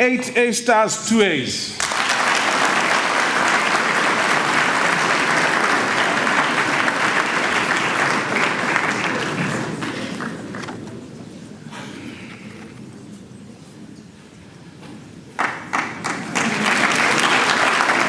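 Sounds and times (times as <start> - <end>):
audience applauding: 1.7 - 11.2, 15.4 - 18.0.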